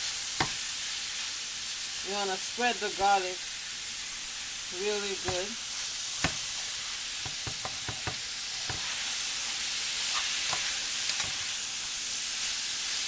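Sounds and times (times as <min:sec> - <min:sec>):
vegetables sizzling in a pan: 0:00.0 - 0:13.0
utensil knocking against pan: 0:07.2 - 0:08.8.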